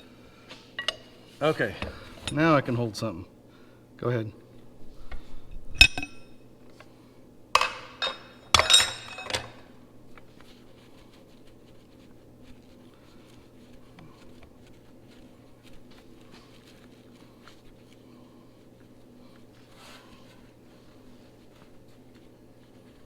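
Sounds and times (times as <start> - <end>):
metal parts clanking: 7.6 - 9.6.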